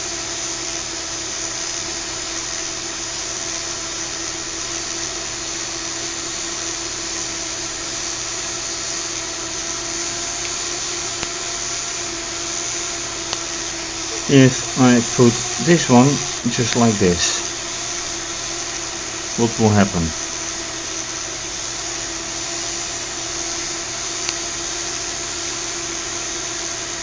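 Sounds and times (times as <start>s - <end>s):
small electric motors whirring: 0.0s - 27.0s
propellers spinning: 10.8s - 24.2s.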